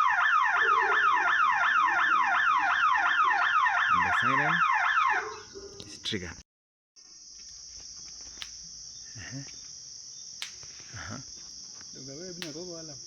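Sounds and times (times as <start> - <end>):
crickets chirring: 0.0 - 6.4, 7.0 - 13.0
sharp clicks: 10.4 - 10.7, 12.4 - 12.6.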